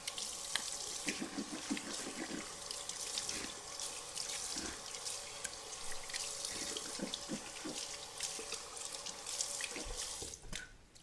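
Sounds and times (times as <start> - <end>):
tap water running into sink: 0.0 - 10.6
water splashing in basin: 0.0 - 10.6.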